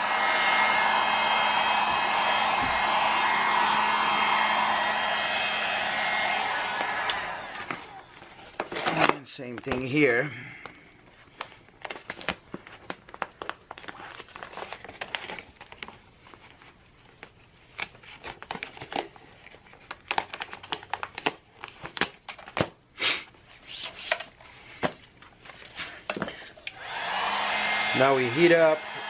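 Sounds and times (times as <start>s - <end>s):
vinyl film crinkling: 11.2s - 22.3s.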